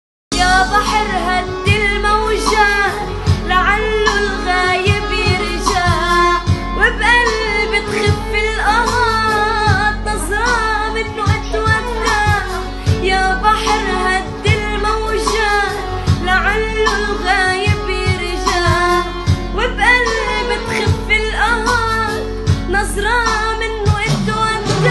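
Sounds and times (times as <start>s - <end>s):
sustained low bass: 0.3s - 7.2s
high singing voice: 0.3s - 24.9s
drum hits: 0.8s - 13.8s, 23.9s - 24.9s.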